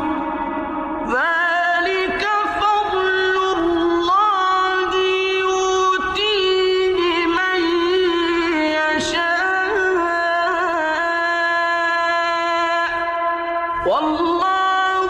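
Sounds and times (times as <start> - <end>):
person chanting melismatic recitation: 0.0 - 15.0.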